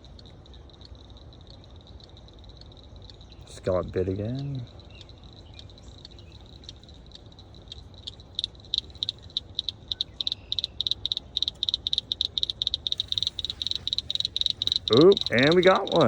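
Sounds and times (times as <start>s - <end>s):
low steady rumble: 0.0s - 16.0s
frog calling in high clicks: 4.4s - 16.0s.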